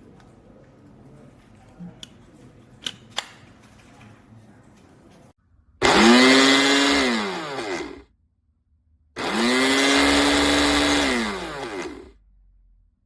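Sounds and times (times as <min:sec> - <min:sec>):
blender motor whining: 0:05.8 - 0:08.0, 0:09.2 - 0:12.2.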